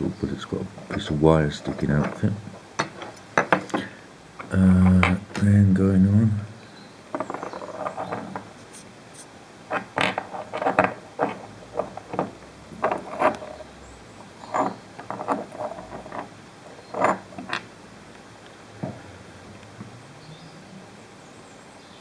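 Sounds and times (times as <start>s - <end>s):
scrap metal pieces clinking: 0.8s - 5.2s, 7.1s - 8.6s, 9.7s - 17.7s.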